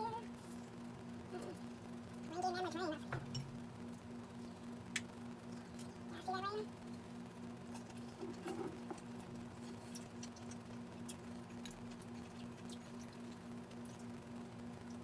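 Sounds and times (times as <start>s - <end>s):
wet eating clicks and smacks: 4.9s - 6.0s, 7.7s - 14.2s.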